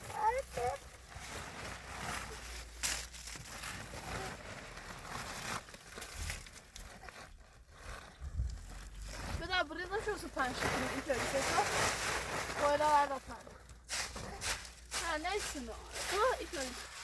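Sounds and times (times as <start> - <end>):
rustling and crinkling: 0.0 - 17.0
sharp crackle: 0.0 - 17.0.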